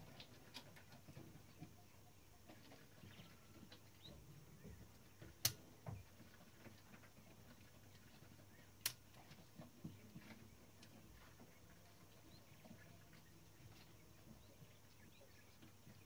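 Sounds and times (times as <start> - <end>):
sharp clicks: 5.4 - 5.6.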